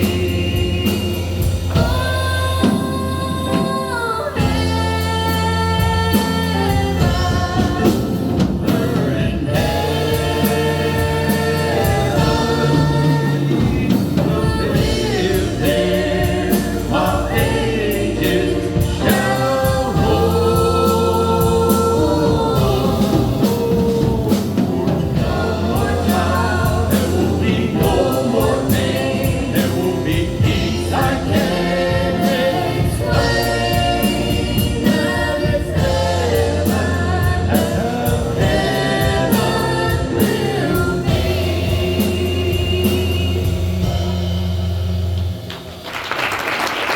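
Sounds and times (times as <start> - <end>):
vocal group singing in harmony: 0.0 - 44.9
steady drum beat: 0.0 - 46.3
band accompaniment: 0.0 - 46.9.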